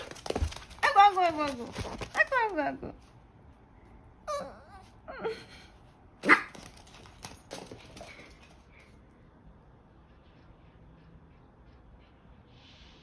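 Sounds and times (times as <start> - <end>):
puppy barking: 6.2 - 6.6.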